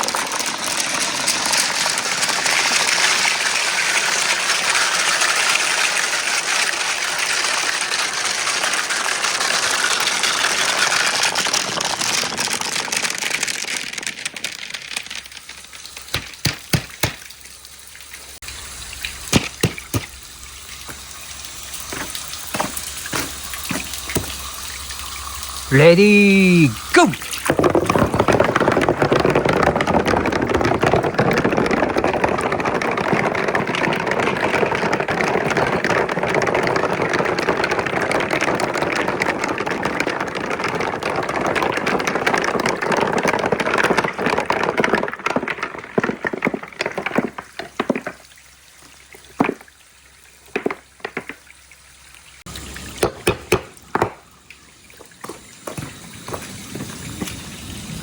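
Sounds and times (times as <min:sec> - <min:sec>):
water rushing down channels: 0:00.0 - 0:58.0
water trickling and dripping: 0:15.2 - 0:28.2, 0:47.4 - 0:58.0
small water splashes: 0:15.4 - 0:25.7, 0:26.7 - 0:29.4.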